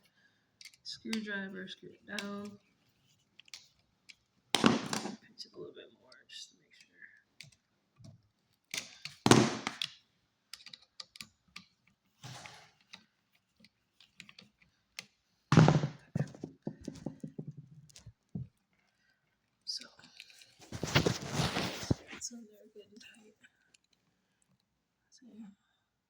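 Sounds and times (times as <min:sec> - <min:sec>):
hand tools clicking on screw: 0:00.6 - 0:01.2, 0:09.8 - 0:15.1.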